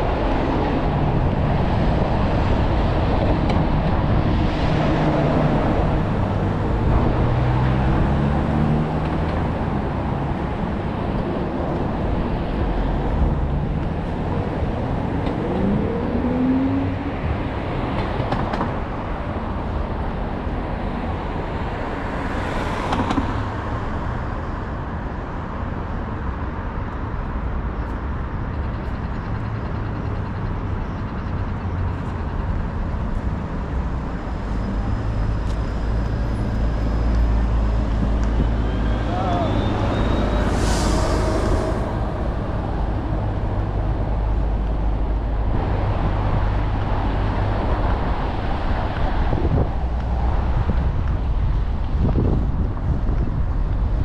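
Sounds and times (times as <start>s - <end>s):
street traffic rumble: 0.0s - 54.0s.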